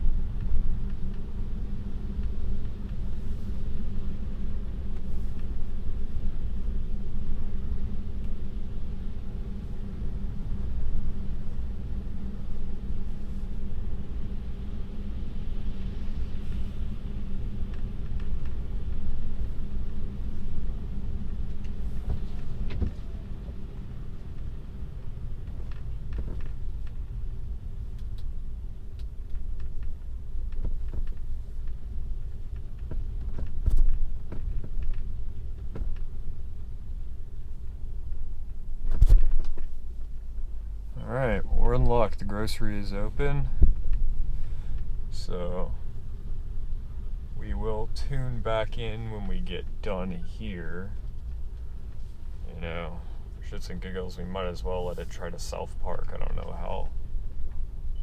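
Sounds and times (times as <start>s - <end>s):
road and tyre rumble: 0.0s - 58.0s
faint high hiss: 51.8s - 57.0s.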